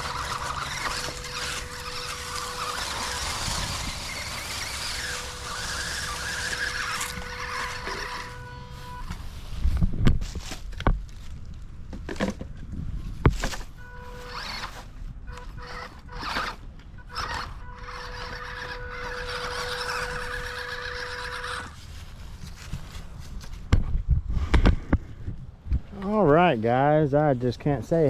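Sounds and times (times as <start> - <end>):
toy car motor and gears whining: 0.0 - 9.5, 13.4 - 23.0
tyres and chassis hitting branches: 0.0 - 26.3.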